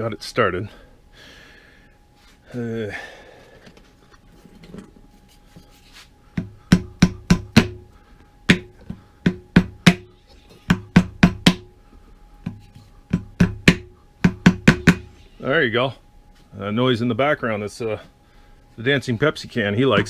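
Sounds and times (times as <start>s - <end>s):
faint steady hum: 0.0s - 20.0s.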